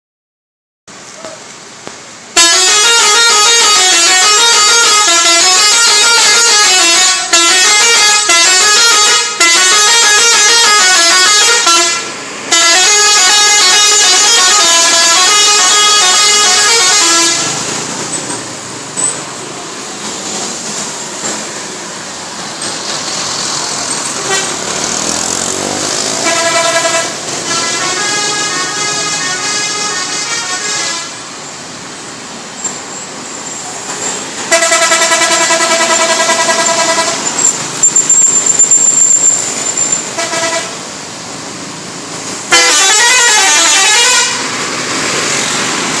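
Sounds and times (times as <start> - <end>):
multi-tone musical bus horn: 2.3 - 18.1, 23.9 - 31.4, 34.4 - 37.8, 39.9 - 40.9, 42.4 - 44.6.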